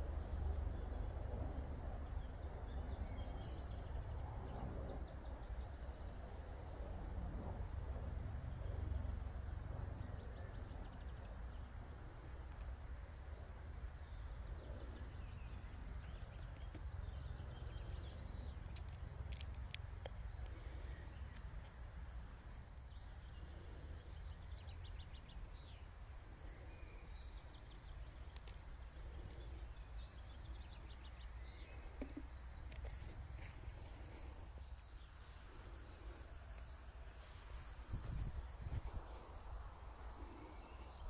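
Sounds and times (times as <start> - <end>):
birds chirping and trilling: 13.5 - 41.0
small clicks: 15.4 - 22.2.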